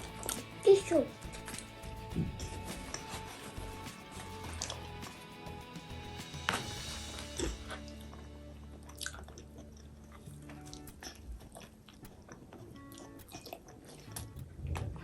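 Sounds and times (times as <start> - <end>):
quiet background music: 0.0 - 15.0
wet mouth chewing clicks: 1.2 - 5.2, 8.8 - 15.0.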